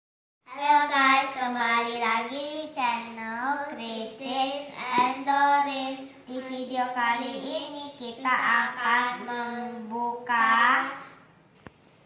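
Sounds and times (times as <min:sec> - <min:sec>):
child singing: 0:00.5 - 0:11.0.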